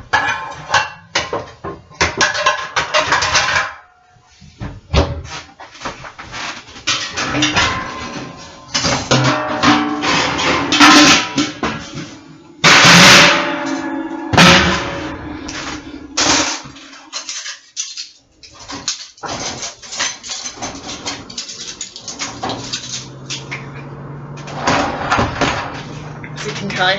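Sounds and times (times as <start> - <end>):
dishes and cutlery clinking: 0.0 - 3.9, 6.8 - 26.9
loud dish clatters: 0.0 - 4.0, 4.9 - 26.9
held low tone: 12.3 - 16.6.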